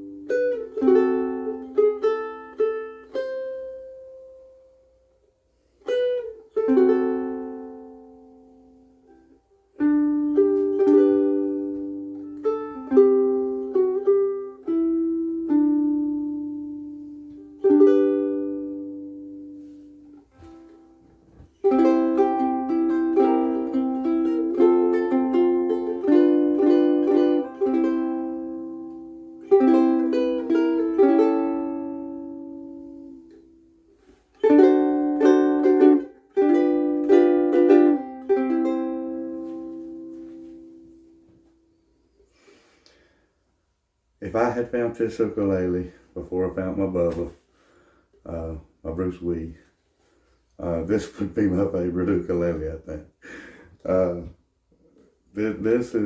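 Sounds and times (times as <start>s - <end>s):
ukulele plucked notes and chords: 0.0s - 5.1s, 5.7s - 41.7s.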